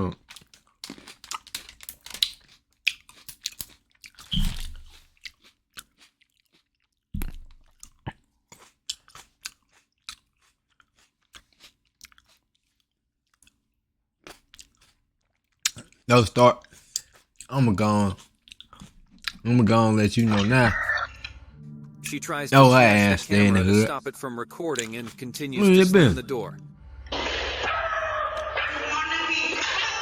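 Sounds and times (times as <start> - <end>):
person chewing crunchy food: 0.0 - 21.5.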